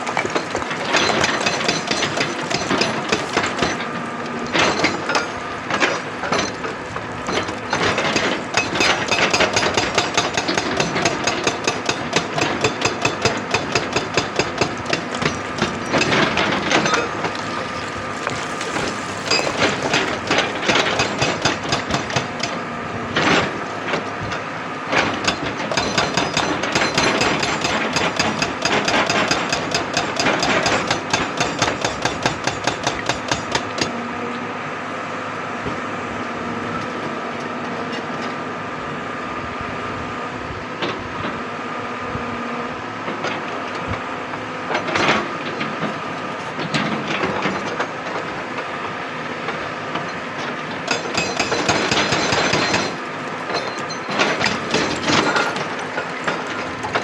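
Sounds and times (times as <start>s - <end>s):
excavator engine running: 0.0s - 10.9s, 12.5s - 22.8s
hydraulic rock breaker hammering rock: 0.0s - 22.6s, 25.0s - 34.0s, 49.5s - 57.0s.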